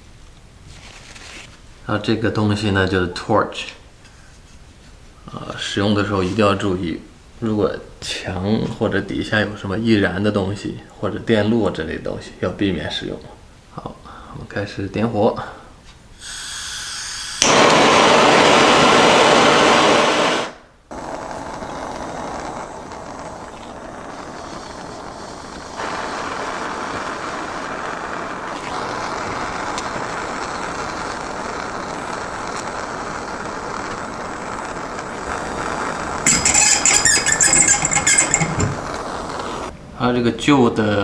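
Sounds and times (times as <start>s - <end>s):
gas torch flame hissing: 16.2s - 39.7s
clattering: 35.3s - 39.7s.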